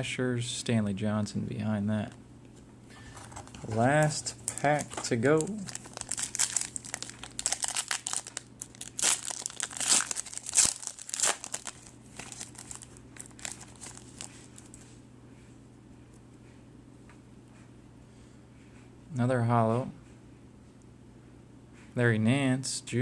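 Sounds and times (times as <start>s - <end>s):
wrapper tearing and crinkling: 3.9s - 14.7s.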